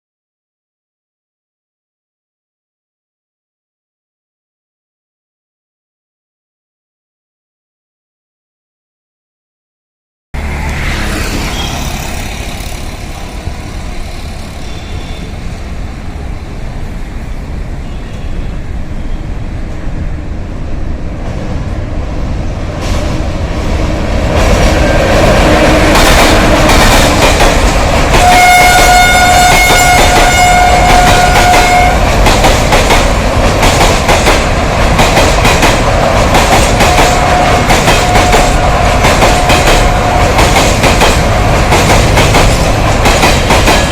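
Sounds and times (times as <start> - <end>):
wheels clickety-clack over rail joints: 10.4 - 16.4, 21.1 - 43.9
train rumble: 10.4 - 43.9
locomotive horn: 28.1 - 32.2, 36.8 - 40.5.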